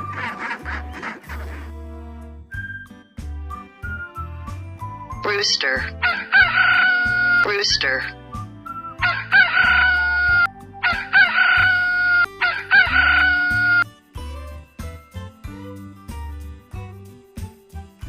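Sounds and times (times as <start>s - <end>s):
rooster crowing: 6.0s - 7.5s, 9.0s - 13.8s.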